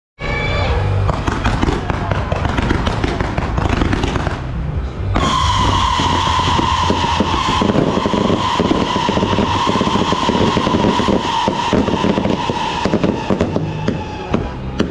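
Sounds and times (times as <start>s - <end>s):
firecrackers crackling: 1.0s - 14.9s
high whistle: 5.1s - 14.7s.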